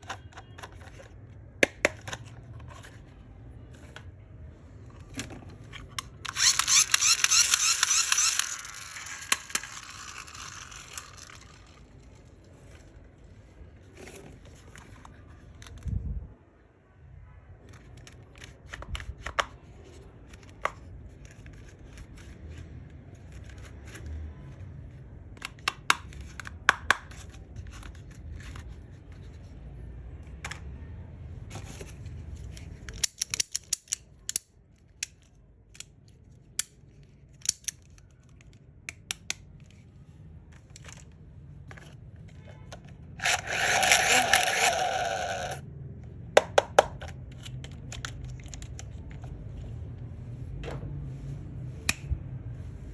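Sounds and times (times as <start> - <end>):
packaging clicks and snips: 32.6 - 36.0, 36.6 - 39.7, 46.8 - 49.3.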